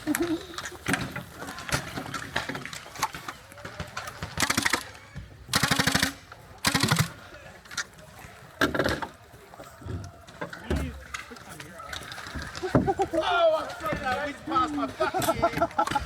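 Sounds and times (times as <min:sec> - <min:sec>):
toy blaster firing rapid bursts: 0:05.5 - 0:07.1.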